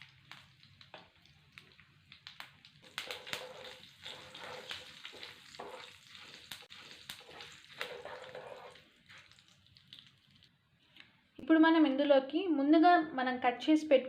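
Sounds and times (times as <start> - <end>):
spices sizzling in hot oil: 0.0 - 10.6
spoon scraping pan: 2.9 - 9.4.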